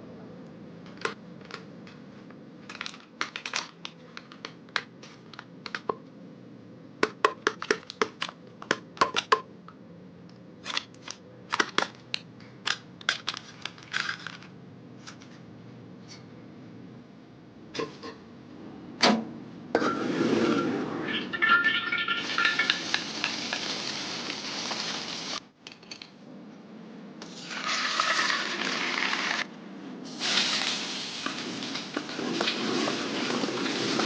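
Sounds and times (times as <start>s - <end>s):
utensils and crockery clattering: 21.4s - 23.7s.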